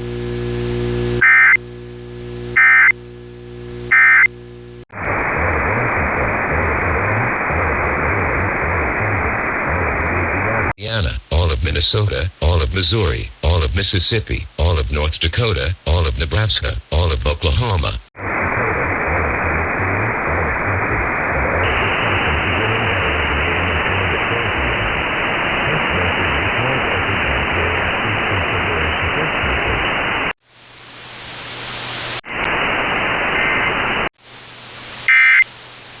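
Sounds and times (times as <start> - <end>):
low hum: 0.0 - 30.2
radio static hiss: 0.0 - 36.0
short loud beep: 3.9 - 4.3, 35.1 - 35.4.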